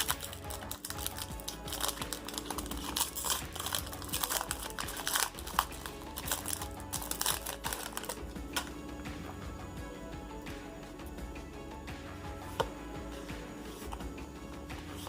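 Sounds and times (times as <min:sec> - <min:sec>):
foil wrapper crinkling and tearing: 0:00.0 - 0:08.8.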